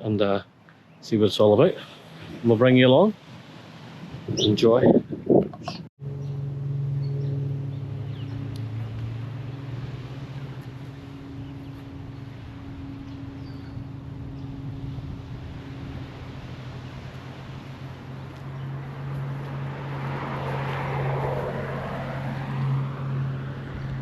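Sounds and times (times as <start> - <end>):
low engine hum: 5.3 - 24.0.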